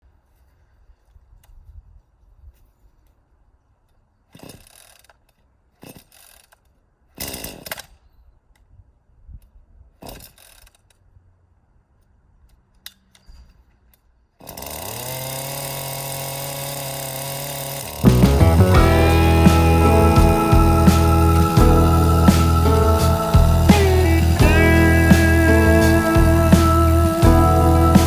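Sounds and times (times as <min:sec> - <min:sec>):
small engine starting and running: 0:14.4 - 0:28.0
scraping noises: 0:18.1 - 0:28.0.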